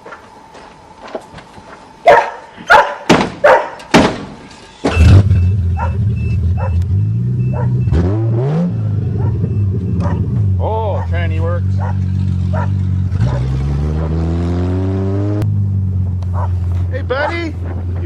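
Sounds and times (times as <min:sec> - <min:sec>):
dog barking: 0:02.0 - 0:03.8, 0:05.8 - 0:06.8, 0:07.5 - 0:07.8, 0:09.1 - 0:11.2, 0:11.8 - 0:14.2, 0:16.3 - 0:16.6
faint pulsing beep: 0:04.8 - 0:08.1, 0:08.7 - 0:10.0
car engine starting and running: 0:04.9 - 0:18.0.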